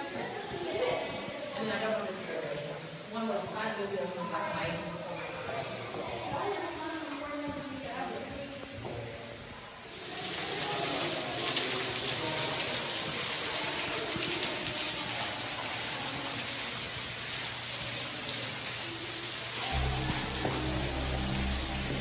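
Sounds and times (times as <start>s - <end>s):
flowing water rushing: 9.3s - 22.0s.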